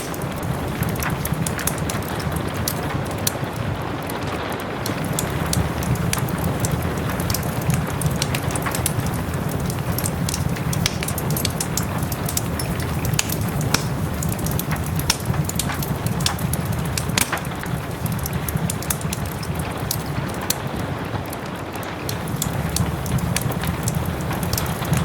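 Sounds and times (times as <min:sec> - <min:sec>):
soft rain hiss: 0:00.0 - 0:25.0
wood fire crackling: 0:00.0 - 0:25.0.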